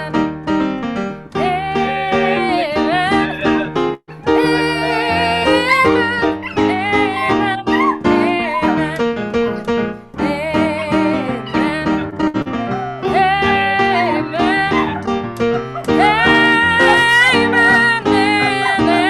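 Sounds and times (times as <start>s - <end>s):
piano or guitar accompaniment: 0.0s - 19.0s
person singing with vibrato: 1.4s - 9.2s, 10.2s - 15.1s, 15.8s - 19.0s.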